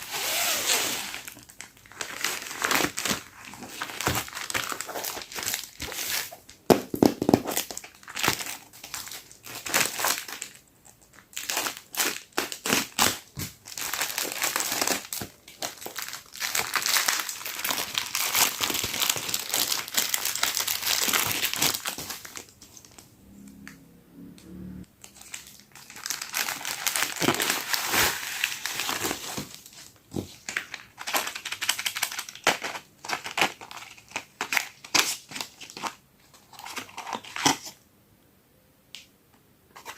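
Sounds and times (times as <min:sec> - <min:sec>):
plastic packaging crinkling: 0:00.1 - 0:23.0, 0:25.0 - 0:37.7.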